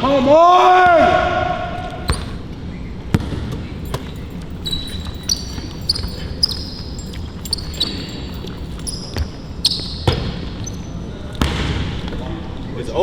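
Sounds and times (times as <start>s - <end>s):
sneakers squeaking: 0.8s - 12.8s
basketball dribbling: 1.8s - 12.1s.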